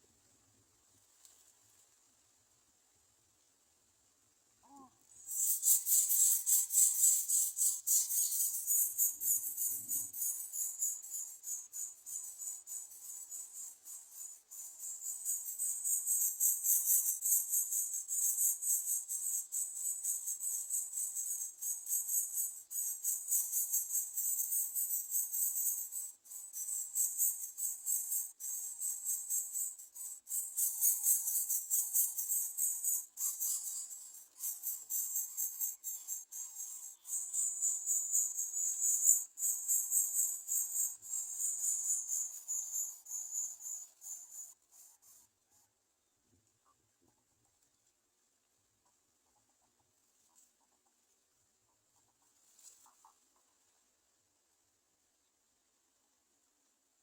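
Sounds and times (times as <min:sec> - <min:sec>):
shrill insect chorus: 0:04.7 - 0:44.6.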